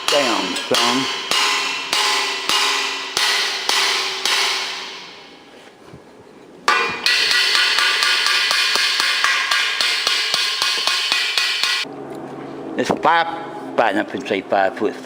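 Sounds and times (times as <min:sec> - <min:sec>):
hammer ringing on metal frame: 0:00.0 - 0:05.5, 0:06.7 - 0:11.9.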